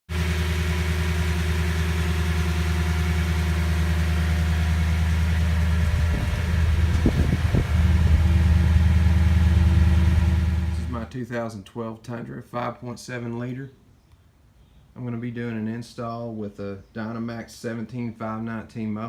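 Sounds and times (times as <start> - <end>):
engine idling through exhaust: 0.1 - 11.1.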